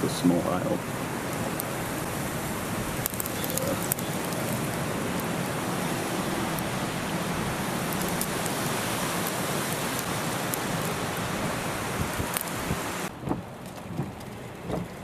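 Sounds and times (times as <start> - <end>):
hail and drizzle hissing: 0.0 - 15.0
ice pellets ticking: 1.3 - 5.6, 6.3 - 12.6.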